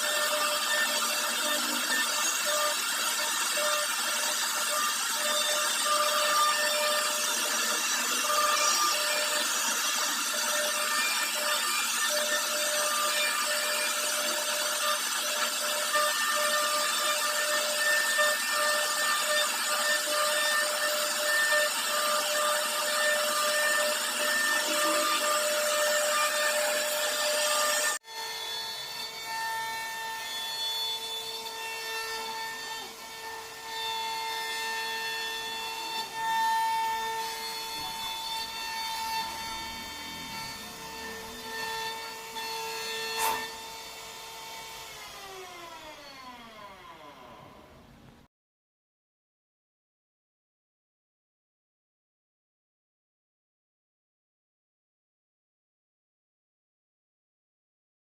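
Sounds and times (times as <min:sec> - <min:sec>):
bit rasping through wood: 0:00.0 - 0:28.0
router spindle whine: 0:00.0 - 0:48.0.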